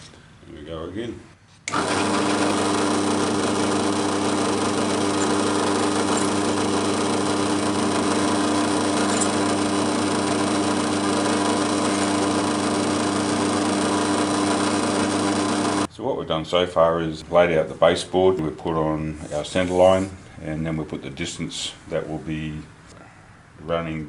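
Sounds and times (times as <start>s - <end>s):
drill press motor running: 1.7s - 15.9s.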